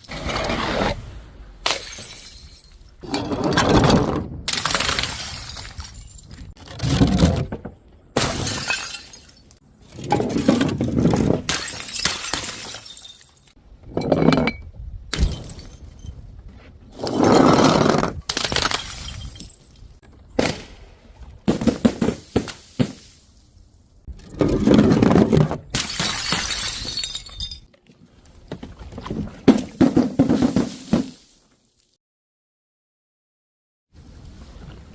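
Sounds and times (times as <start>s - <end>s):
glass bottles shattering: 1.7s - 3.3s, 4.5s - 6.6s, 8.2s - 16.1s, 18.4s - 20.0s, 25.7s - 27.7s.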